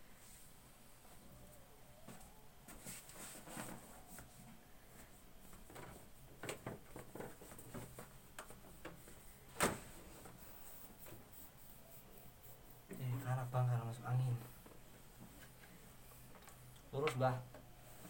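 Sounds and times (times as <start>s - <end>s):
hands rubbing skin: 10.4s - 12.9s.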